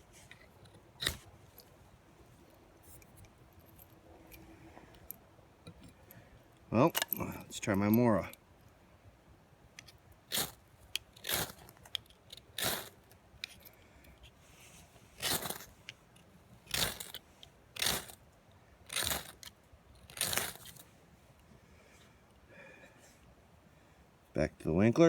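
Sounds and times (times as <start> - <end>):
knife scraping fire starter: 0.2 - 1.3, 9.8 - 14.4, 15.1 - 18.3, 18.9 - 20.8.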